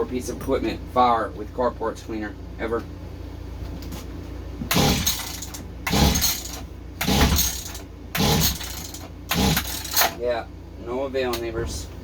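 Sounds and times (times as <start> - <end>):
recoil starter cord pulls: 4.7 - 10.2.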